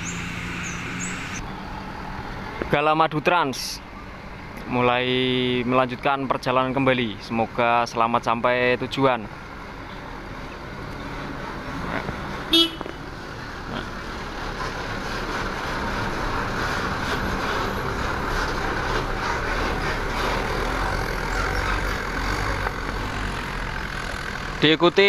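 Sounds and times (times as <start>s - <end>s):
bus engine pulling away: 0.0s - 3.2s, 9.3s - 25.0s
bus horn toot: 12.5s - 13.0s.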